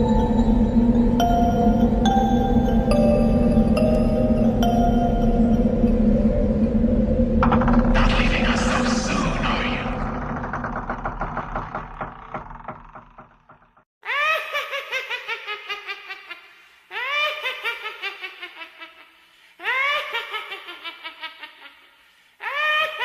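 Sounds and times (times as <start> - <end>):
high-pitched cackling laugh: 14.0 - 23.0.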